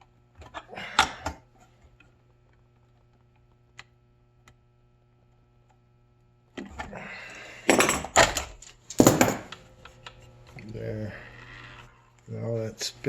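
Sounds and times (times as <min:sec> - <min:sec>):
steady low hum: 0:00.0 - 0:13.0
clattering knocks of parts: 0:07.7 - 0:09.6.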